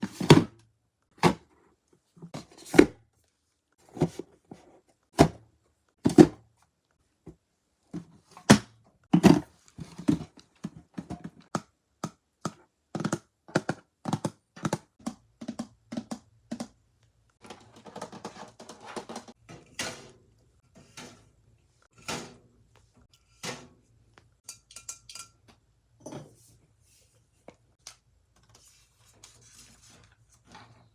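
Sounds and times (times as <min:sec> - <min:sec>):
items thunking and knocking: 0:00.0 - 0:01.6, 0:02.2 - 0:03.0, 0:03.8 - 0:06.4, 0:07.2 - 0:16.8, 0:17.4 - 0:22.6, 0:25.5 - 0:26.6.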